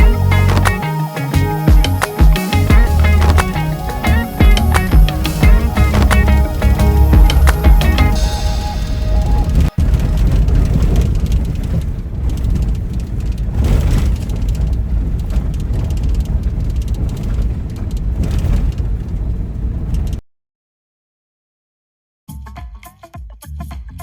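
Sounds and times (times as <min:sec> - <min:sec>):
vehicle low rumble: 0:00.0 - 0:20.2.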